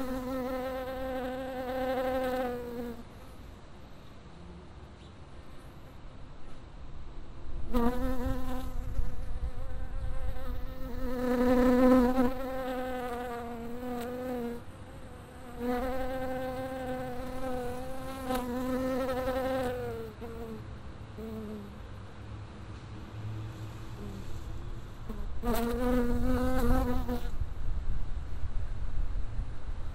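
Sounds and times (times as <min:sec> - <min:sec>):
insect buzzing: 0:00.0 - 0:03.0, 0:07.7 - 0:20.6.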